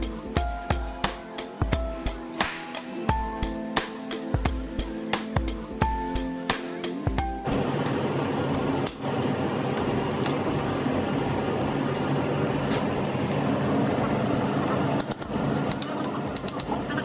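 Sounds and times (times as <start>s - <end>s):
gas torch flame hissing: 7.5s - 16.9s.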